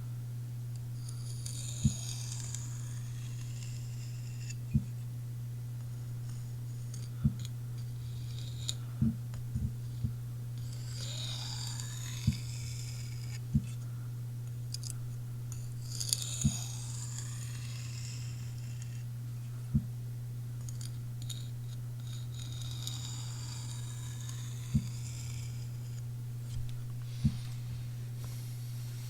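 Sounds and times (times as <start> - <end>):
steady low hum: 0.0 - 29.0
blade scraping on sharpening stone: 1.0 - 4.6, 10.6 - 13.4, 15.5 - 19.0, 20.7 - 26.0.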